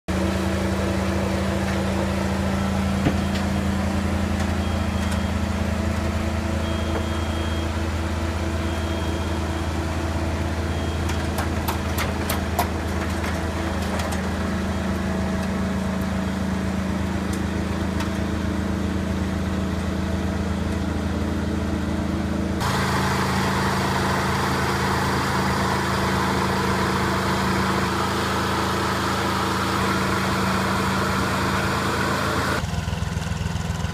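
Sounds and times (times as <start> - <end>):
engine running steadily: 0.1 - 33.9.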